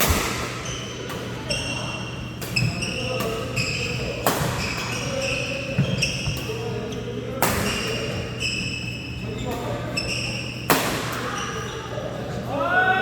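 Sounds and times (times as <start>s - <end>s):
racket hitting shuttlecock: 0.0s - 6.6s, 7.4s - 8.2s, 10.6s - 11.4s
shoes squeaking on floor: 0.2s - 12.0s.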